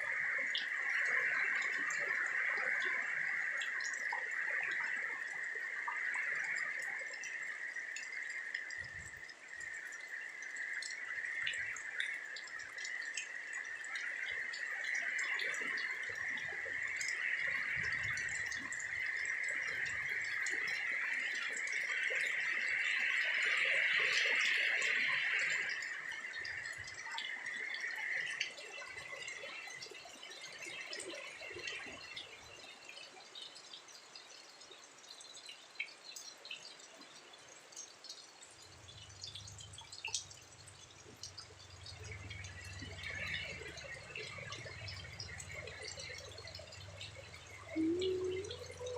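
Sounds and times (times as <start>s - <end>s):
rain falling: 0.0s - 48.9s
drips and taps: 0.2s - 48.9s
high-pitched drone: 47.6s - 48.9s.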